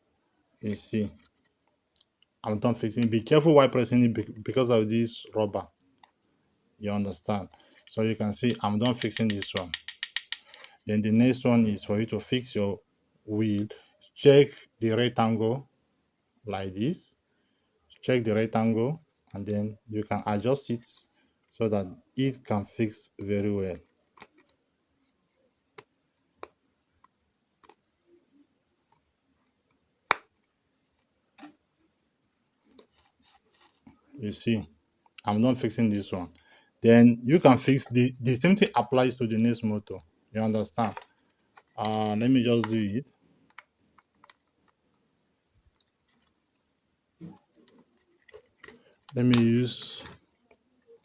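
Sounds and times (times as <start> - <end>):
plastic parts clicking and tapping: 7.5 - 10.8, 25.8 - 27.9, 40.8 - 42.8, 43.4 - 44.9, 45.7 - 49.5
light clicks and taps: 7.8 - 10.8.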